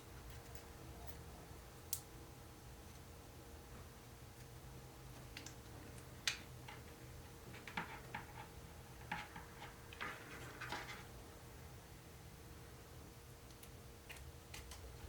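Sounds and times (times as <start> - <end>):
small parts clicking and tapping: 13.5 - 14.9.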